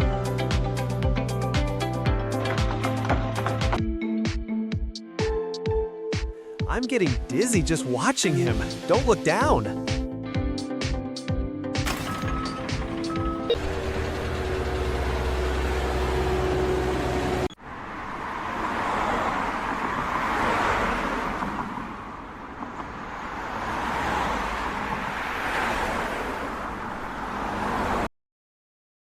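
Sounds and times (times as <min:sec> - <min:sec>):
vehicles rushing past: 0:12.2 - 0:28.1
low engine hum: 0:12.4 - 0:17.5.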